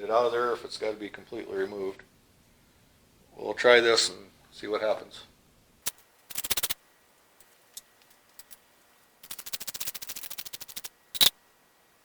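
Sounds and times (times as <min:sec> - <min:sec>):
ratchet wrench clicking: 0:06.3 - 0:06.8, 0:09.2 - 0:11.3.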